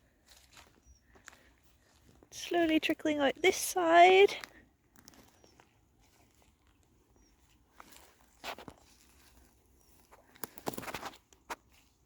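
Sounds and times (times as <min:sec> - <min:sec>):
footsteps on wet path: 0:00.0 - 0:12.0.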